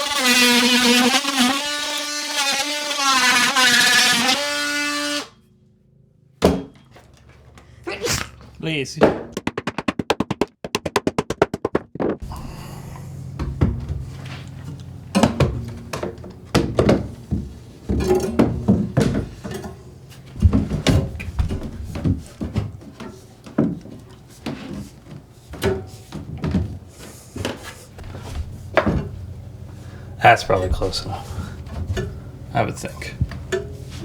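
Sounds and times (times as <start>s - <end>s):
plastic pipe thunks and knocks: 6.4s - 7.0s, 9.0s - 12.3s, 15.2s - 19.5s, 20.4s - 23.0s.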